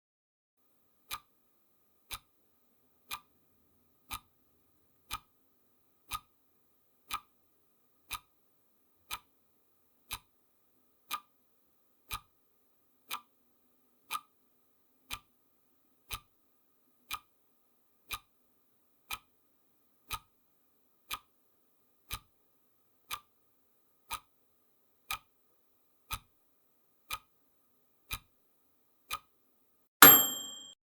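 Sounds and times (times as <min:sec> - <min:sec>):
clock ticking: 0:01.1 - 0:01.3, 0:02.1 - 0:02.3, 0:03.1 - 0:03.3, 0:04.1 - 0:04.3, 0:05.1 - 0:05.3, 0:06.1 - 0:06.3, 0:07.1 - 0:07.3, 0:08.1 - 0:08.3, 0:09.0 - 0:09.3, 0:10.1 - 0:10.3, 0:11.1 - 0:11.3, 0:12.1 - 0:12.3, 0:13.1 - 0:13.3, 0:14.1 - 0:14.4, 0:15.1 - 0:15.3, 0:16.1 - 0:16.3, 0:17.1 - 0:17.3, 0:18.1 - 0:18.3, 0:19.1 - 0:19.3, 0:20.1 - 0:20.3, 0:21.1 - 0:21.3, 0:22.1 - 0:22.3, 0:23.1 - 0:23.3, 0:24.1 - 0:24.3, 0:25.1 - 0:25.3, 0:26.1 - 0:26.3, 0:27.1 - 0:27.3, 0:28.1 - 0:28.3.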